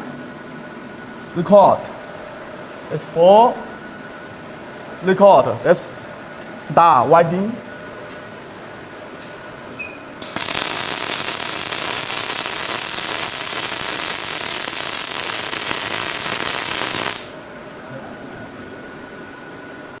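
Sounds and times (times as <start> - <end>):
welding arc hissing: 10.2 - 17.4.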